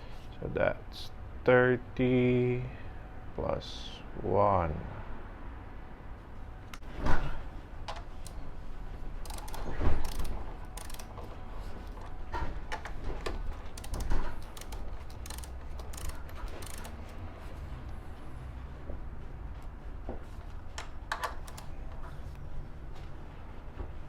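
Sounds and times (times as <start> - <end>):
ratchet wrench clicking: 9.2 - 11.2, 13.7 - 17.2.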